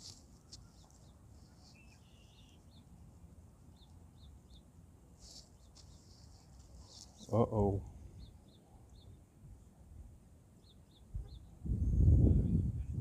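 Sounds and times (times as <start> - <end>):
buzzy bird call: 0.0 - 2.8
small birds chirping: 0.0 - 9.4, 10.5 - 11.6.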